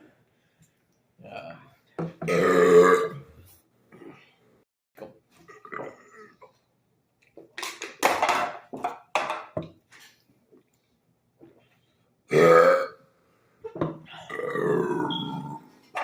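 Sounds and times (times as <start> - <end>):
men burping: 2.2 - 3.3, 5.4 - 6.6, 12.3 - 13.0, 14.1 - 15.6.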